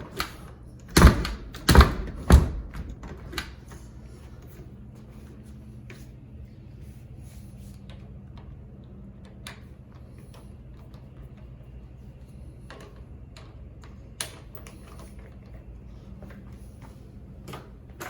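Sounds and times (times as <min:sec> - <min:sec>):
steady low hum: 0:00.0 - 0:18.0
doorknob and latch clicking: 0:00.2 - 0:03.6.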